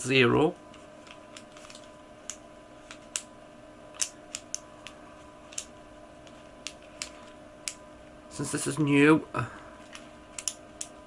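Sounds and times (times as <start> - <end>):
combination lock dials clicking: 10.3 - 11.0.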